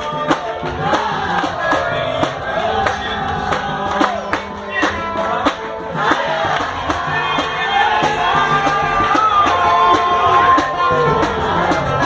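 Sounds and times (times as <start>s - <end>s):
drum and hand percussion: 0.0s - 12.0s
voices singing together: 0.0s - 12.0s.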